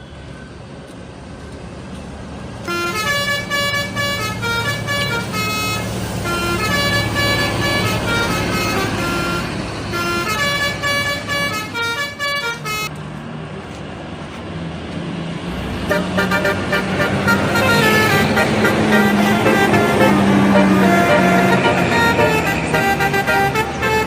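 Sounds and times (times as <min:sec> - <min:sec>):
bus engine running: 0:00.3 - 0:24.0
bus horn playing a tune: 0:02.6 - 0:12.9, 0:15.8 - 0:24.0.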